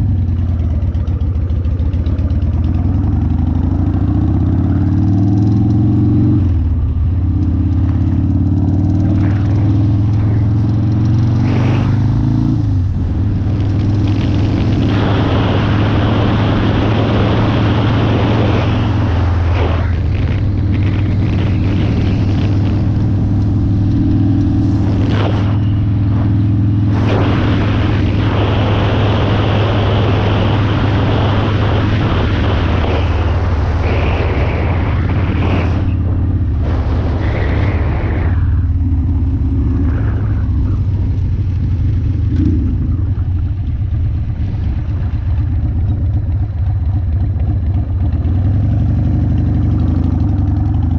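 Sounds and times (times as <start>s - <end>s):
motorcycle engine running: 0.0s - 50.9s
wind noise on microphone: 8.8s - 46.8s.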